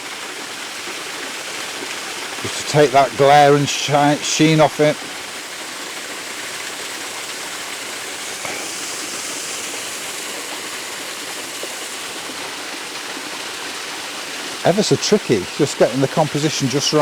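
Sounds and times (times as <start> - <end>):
waterfall rushing onto rocks: 0.0 - 17.0.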